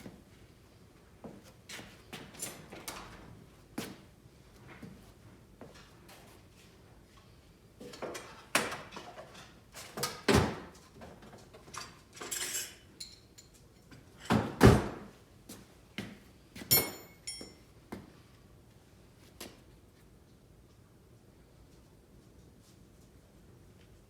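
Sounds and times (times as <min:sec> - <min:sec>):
metal tools knocking and clanking: 0:16.7 - 0:17.6
ringing metallic clink: 0:16.7 - 0:17.6.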